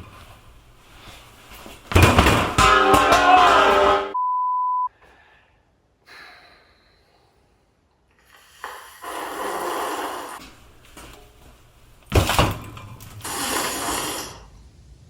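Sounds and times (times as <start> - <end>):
short steady beep: 4.2 - 4.9
breathy exhaled sighs: 4.9 - 10.5, 13.1 - 14.6.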